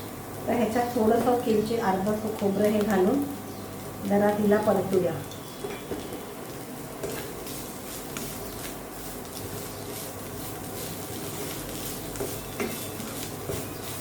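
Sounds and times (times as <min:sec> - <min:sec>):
vegetables sizzling in oil: 0:00.0 - 0:14.0
spatula scraping a pan: 0:07.0 - 0:14.0.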